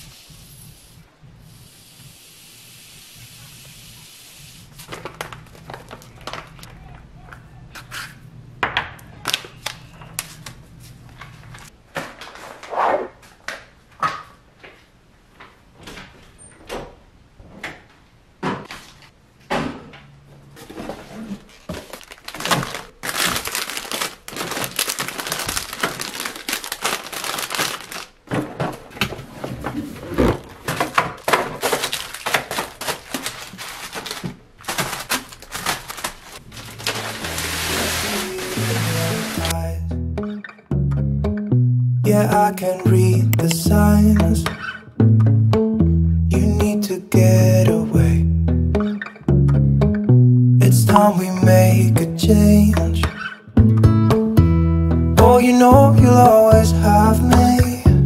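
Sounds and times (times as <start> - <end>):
packaging rustling: 4.8 - 6.7, 20.7 - 39.6.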